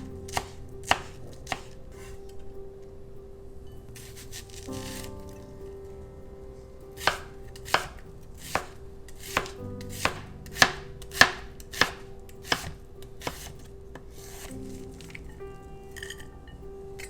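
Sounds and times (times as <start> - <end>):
knife chopping on cutting board: 0.3 - 2.1, 7.0 - 13.6.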